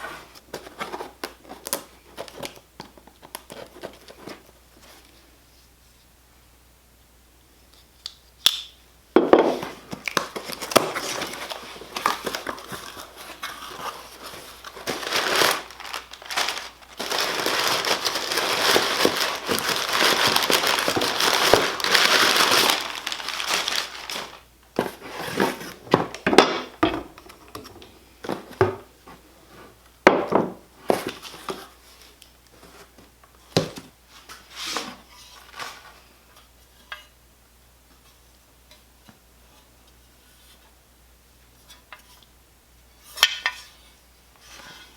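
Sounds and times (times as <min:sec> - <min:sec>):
crinkling handling noises: 0:00.0 - 0:05.3, 0:09.3 - 0:36.8.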